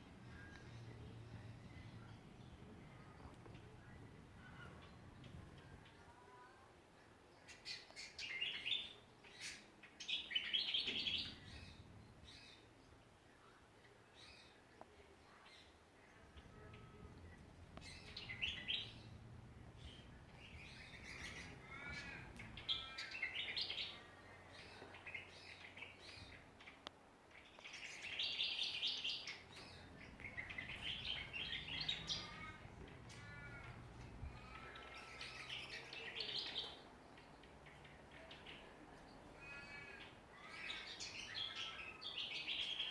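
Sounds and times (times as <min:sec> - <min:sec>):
songbirds warbling: 0:00.0 - 0:42.9.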